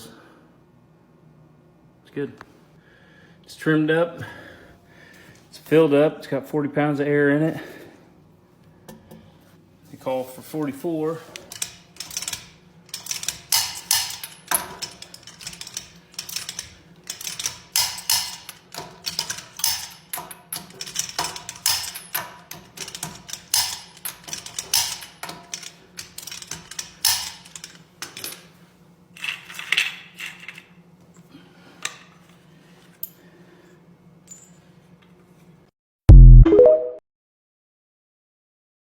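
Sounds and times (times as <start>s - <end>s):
metal tools clinking: 11.4s - 28.5s
sudden loud low sound: 36.1s - 36.8s.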